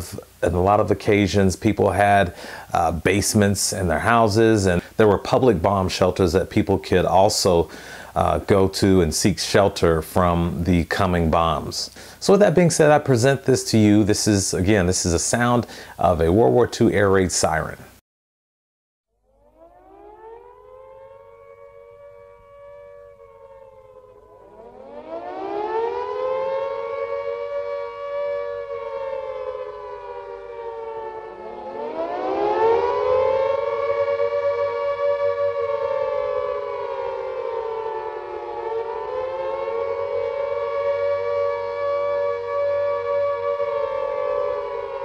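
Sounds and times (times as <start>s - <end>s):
air raid siren wailing: 19.2s - 45.0s.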